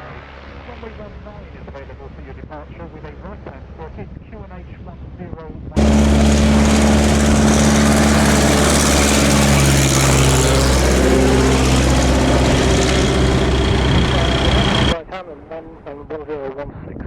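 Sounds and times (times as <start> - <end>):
light aircraft engine drone: 5.8 - 15.0.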